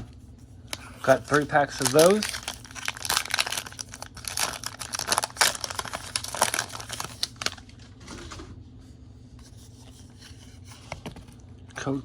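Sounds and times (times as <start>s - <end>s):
foil wrapper crinkling: 0.7s - 7.9s.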